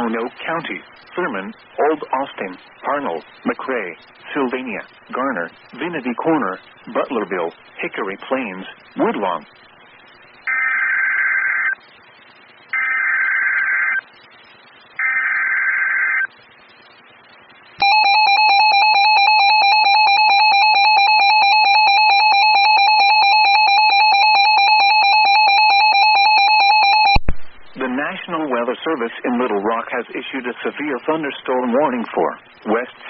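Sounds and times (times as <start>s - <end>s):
loud steady attention tone: 0.0s - 28.2s
screechy digital header code: 10.4s - 11.8s, 15.0s - 16.3s, 17.8s - 27.2s.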